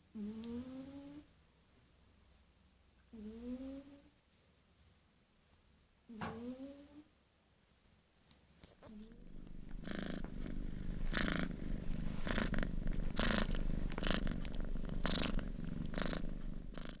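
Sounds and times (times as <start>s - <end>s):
cat snoring: 3.1s - 4.0s, 9.2s - 17.0s.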